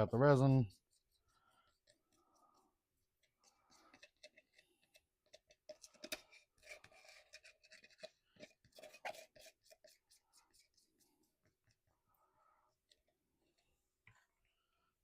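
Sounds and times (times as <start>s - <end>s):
clicks and scratches: 0.4s - 11.9s
resin scraped from container: 5.8s - 10.8s.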